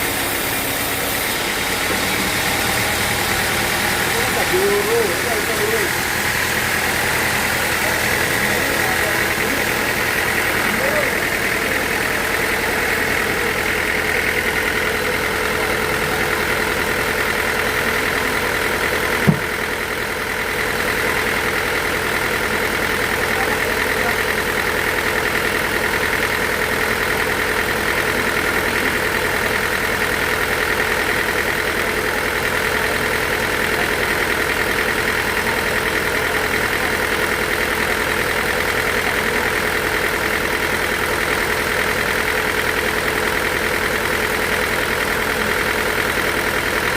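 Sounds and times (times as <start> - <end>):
sawmill machinery droning: 0.0 - 46.9
sharp knock: 19.2 - 19.5.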